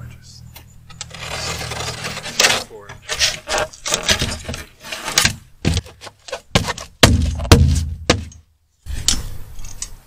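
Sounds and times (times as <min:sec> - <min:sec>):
parts knocking and clattering: 0:00.9 - 0:08.4.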